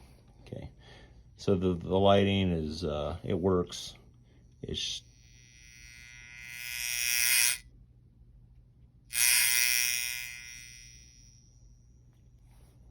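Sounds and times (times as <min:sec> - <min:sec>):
lamp dimmer electrical buzz: 0:03.7 - 0:07.8, 0:09.0 - 0:12.8.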